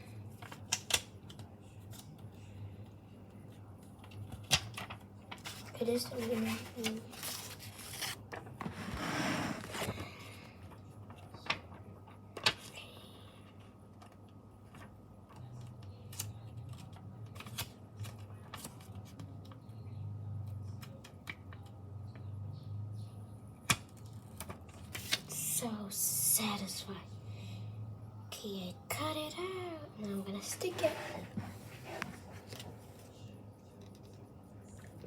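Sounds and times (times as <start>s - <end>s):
paper rustling: 3.8s - 12.7s, 24.4s - 25.4s, 30.5s - 35.0s.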